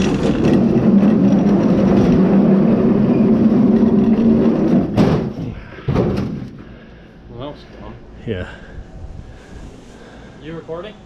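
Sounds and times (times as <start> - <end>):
grill wheels rumbling on pavement: 0.0 - 5.7.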